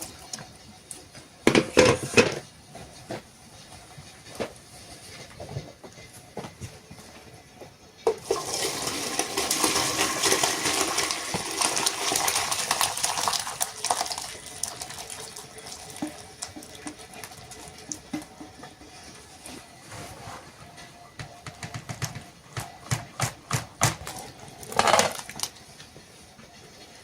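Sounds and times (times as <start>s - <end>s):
water running or splashing: 8.1s - 19.8s.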